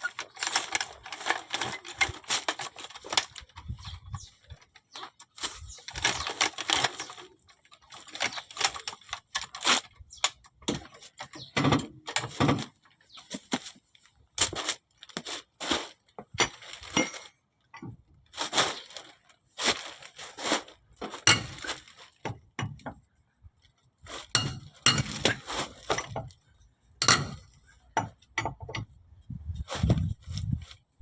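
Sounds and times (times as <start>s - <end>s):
metallic clinks and clanks: 27.0s - 27.5s.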